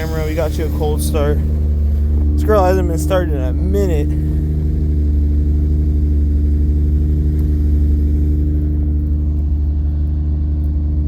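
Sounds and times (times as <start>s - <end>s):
car engine idling: 0.0s - 11.0s.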